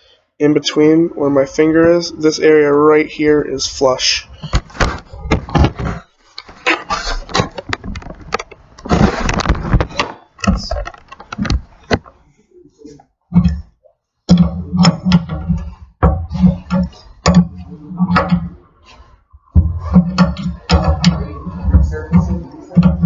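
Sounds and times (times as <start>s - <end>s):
metal knocking: 14.3s - 23.0s.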